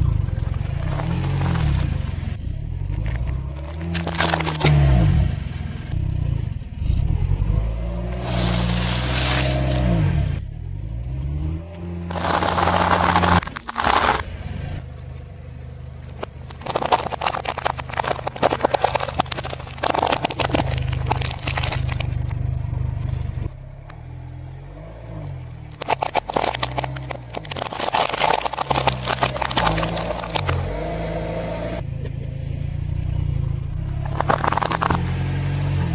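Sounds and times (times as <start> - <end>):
car engine running low: 0.0 - 35.9
tyre crushing objects: 3.1 - 5.0, 12.0 - 14.2, 16.1 - 22.3, 25.7 - 30.8, 34.0 - 35.2.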